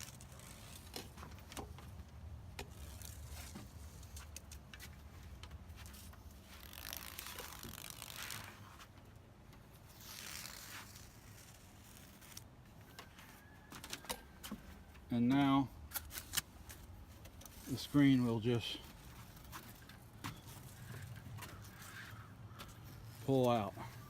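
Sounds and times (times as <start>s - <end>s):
rubber spline scraping and tearing: 0.0s - 4.8s, 5.8s - 14.3s, 15.9s - 17.8s.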